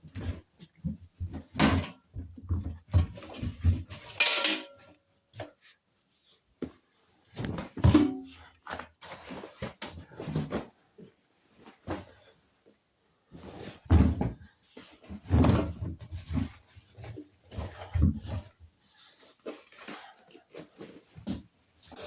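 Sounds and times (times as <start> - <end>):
knocks and clattering of handled objects: 0.0 - 5.7, 6.6 - 12.2, 13.6 - 22.0.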